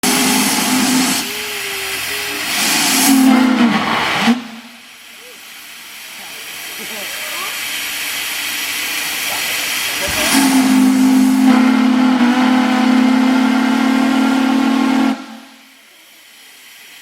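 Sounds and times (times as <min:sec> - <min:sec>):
steam whistle low chord: 0:00.0 - 0:01.4, 0:02.6 - 0:04.8, 0:10.2 - 0:15.8
steam hissing: 0:00.0 - 0:17.0.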